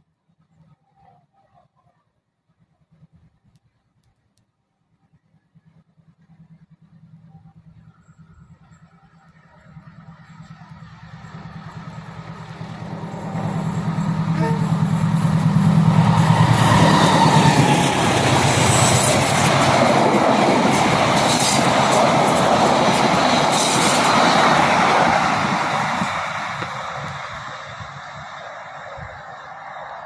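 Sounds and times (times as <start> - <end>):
diesel locomotive engine drone: 5.1 - 30.0
train wheels rushing and clacking: 9.7 - 28.5.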